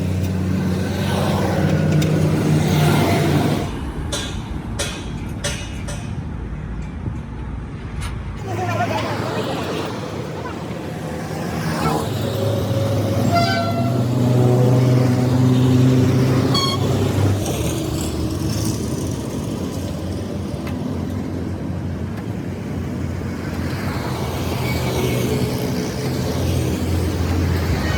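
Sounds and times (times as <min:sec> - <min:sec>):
engines and traffic noise: 0:00.0 - 0:27.9
vehicle horn: 0:13.2 - 0:14.2, 0:16.5 - 0:17.1.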